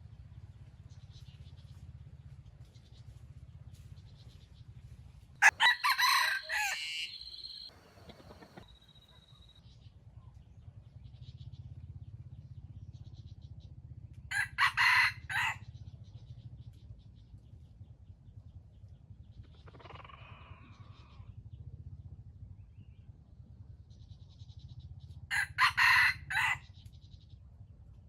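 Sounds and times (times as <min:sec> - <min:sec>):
steady low hum: 0:00.0 - 0:14.3
rooster crowing: 0:05.4 - 0:07.7, 0:14.3 - 0:15.6, 0:25.3 - 0:26.6
distant rooster crowing: 0:05.4 - 0:08.7, 0:14.3 - 0:15.6, 0:25.3 - 0:26.6
faint bird chirps: 0:06.4 - 0:10.6.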